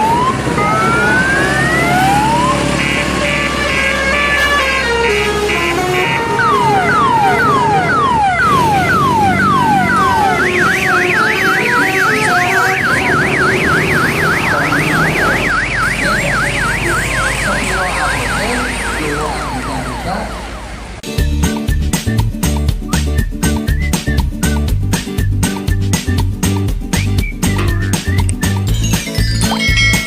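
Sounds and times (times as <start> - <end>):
electronic siren horn: 0.0 - 21.0, 27.6 - 28.1.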